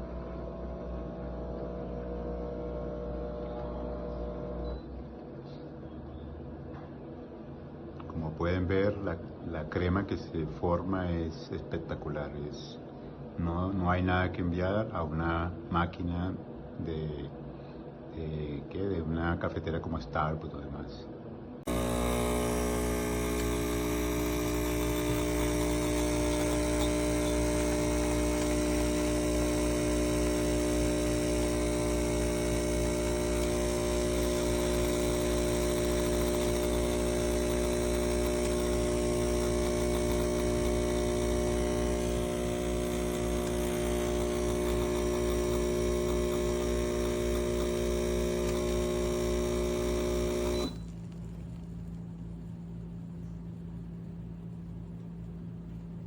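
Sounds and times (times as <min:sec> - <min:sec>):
espresso machine pump humming: 0:00.0 - 0:04.7, 0:21.6 - 0:56.0.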